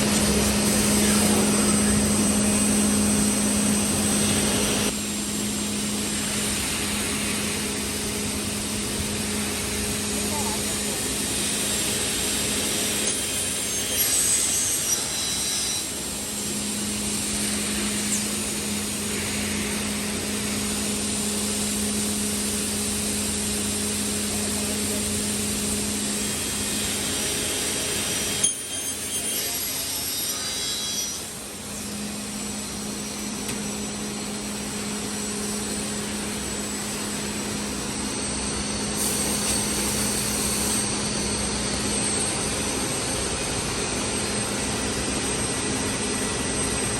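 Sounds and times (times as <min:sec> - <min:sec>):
saw motor hum: 0:00.0 - 0:46.9
blade cutting panels: 0:24.1 - 0:32.2.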